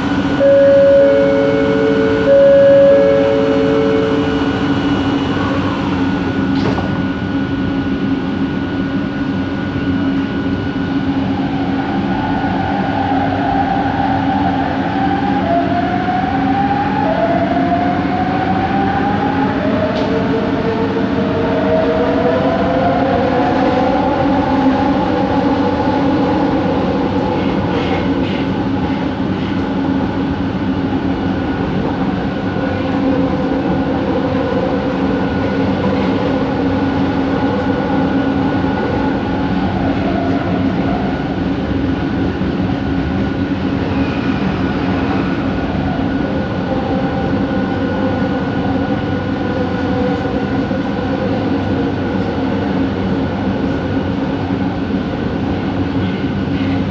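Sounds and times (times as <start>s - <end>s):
whining motor tone: 0.0s - 6.4s
train rolling noise: 0.0s - 56.9s.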